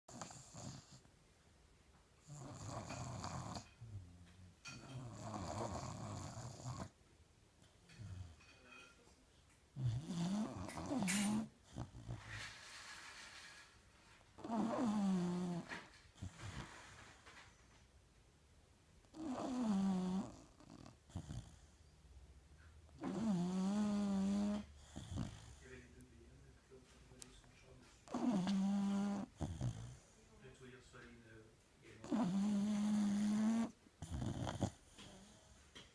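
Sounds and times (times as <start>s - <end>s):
baby snoring: 2.3s - 3.8s, 4.8s - 7.0s, 9.8s - 12.3s, 14.4s - 16.7s, 19.1s - 21.5s, 23.0s - 25.9s, 28.0s - 30.1s, 31.9s - 35.5s.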